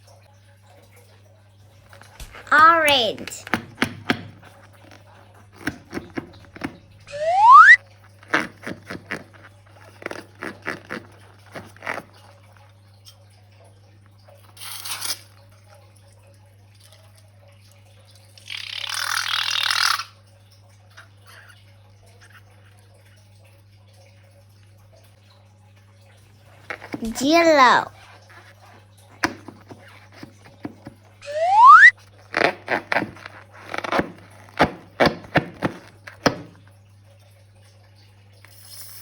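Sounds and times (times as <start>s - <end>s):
rising squeak: 7.1s - 7.8s, 31.2s - 31.9s
hissing pouring noise: 38.5s - 39.0s.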